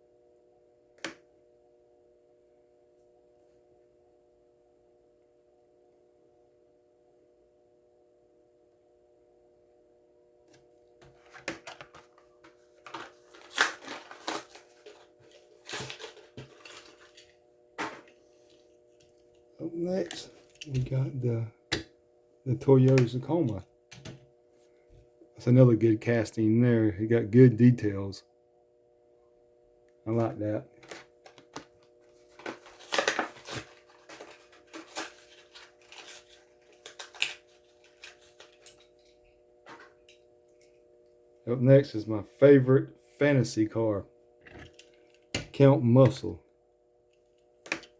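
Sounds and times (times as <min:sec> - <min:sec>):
faint steady hum: 0:00.0 - 0:47.9
plastic packaging crinkling and tearing: 0:12.8 - 0:17.4, 0:32.2 - 0:39.2.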